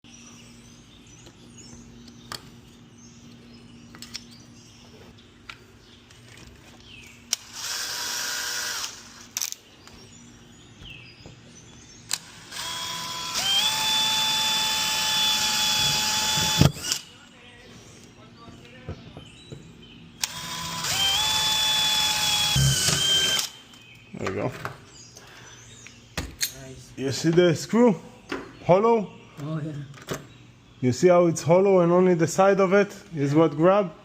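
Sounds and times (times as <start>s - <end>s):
power drill running: 7.3s - 9.3s, 12.1s - 17.1s, 20.2s - 23.6s.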